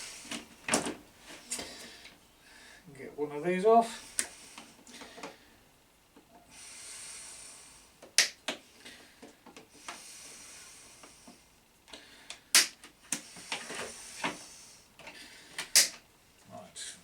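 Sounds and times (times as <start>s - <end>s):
rustling scraping hiss: 13.2s - 14.9s.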